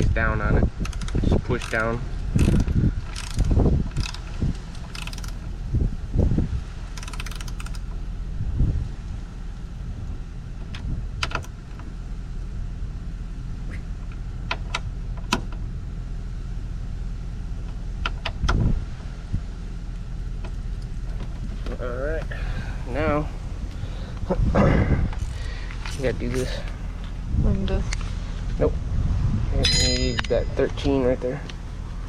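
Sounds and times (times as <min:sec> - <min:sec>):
steady low hum: 0:00.0 - 0:32.0
ratchet wrench clicking: 0:00.8 - 0:05.5, 0:06.9 - 0:07.9.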